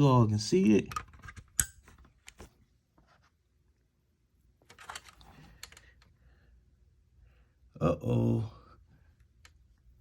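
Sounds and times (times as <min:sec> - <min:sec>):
faint clicks and handling: 0:04.6 - 0:06.2, 0:09.2 - 0:09.9.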